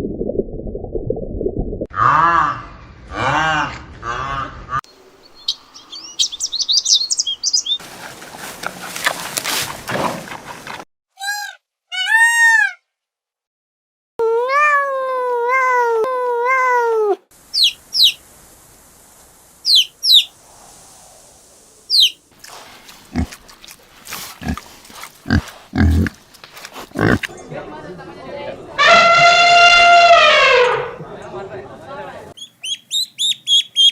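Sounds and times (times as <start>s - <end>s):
quick high chirps: 19.7s - 20.3s, 21.9s - 22.2s.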